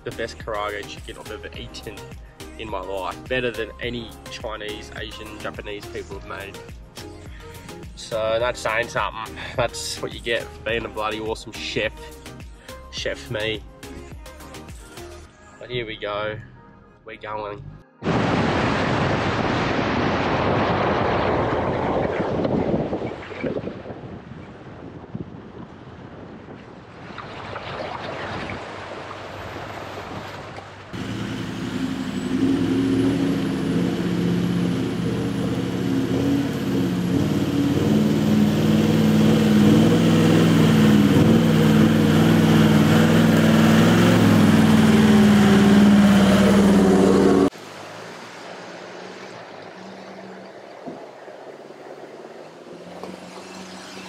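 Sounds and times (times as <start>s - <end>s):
rushing water: 26.8s - 54.0s
car engine under load: 30.0s - 54.0s.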